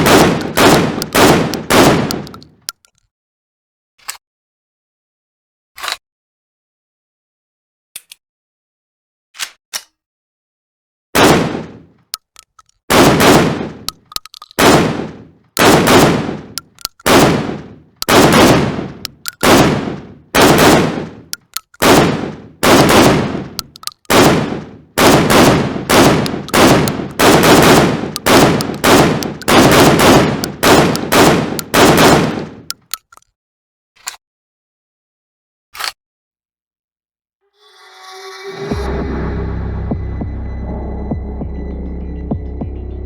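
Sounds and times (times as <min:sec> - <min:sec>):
gunshot echo: 0:00.0 - 0:02.4, 0:11.2 - 0:11.9, 0:12.9 - 0:13.9, 0:14.6 - 0:32.7
shotgun firing in bursts: 0:00.0 - 0:02.6, 0:11.2 - 0:12.0, 0:12.9 - 0:33.0.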